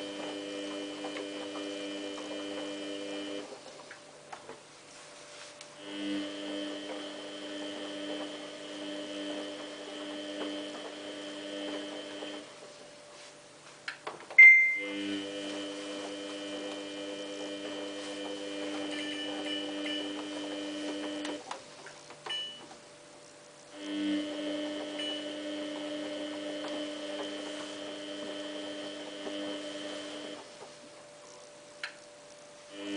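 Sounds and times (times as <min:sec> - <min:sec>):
washing machine motor hum: 0:00.0 - 0:32.9
sharp high-pitched sound: 0:14.4 - 0:14.9.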